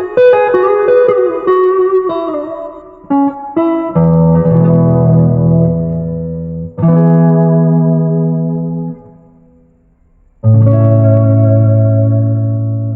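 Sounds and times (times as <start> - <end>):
guitar chords strummed: 0.0 - 12.9.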